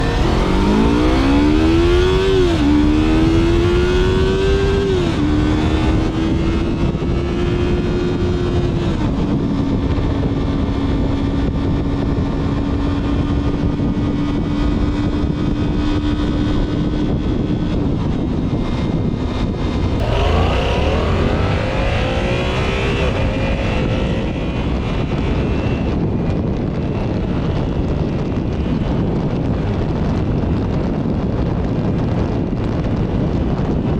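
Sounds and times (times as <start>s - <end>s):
motorcycle engine accelerating: 0.0s - 33.9s
low rush of noise: 20.0s - 25.8s.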